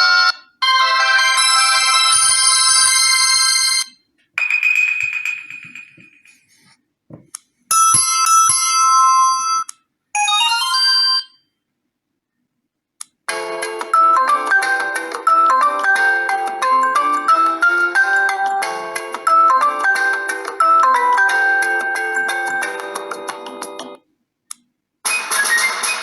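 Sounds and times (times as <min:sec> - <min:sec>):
electronic ringtone melodies: 0:07.7 - 0:11.4, 0:13.3 - 0:24.0
chiming ringtone melody: 0:13.3 - 0:24.0.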